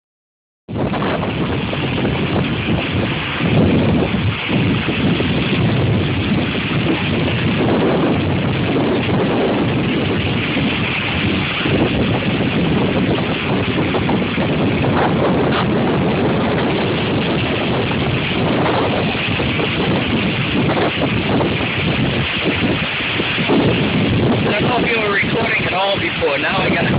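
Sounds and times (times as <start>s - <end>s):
wind buffeting microphone: 0.7s - 26.9s.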